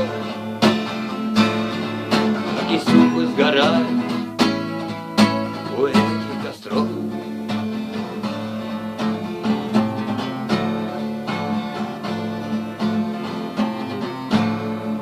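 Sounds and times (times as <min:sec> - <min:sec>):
acoustic guitar strumming: 0:00.0 - 0:15.0.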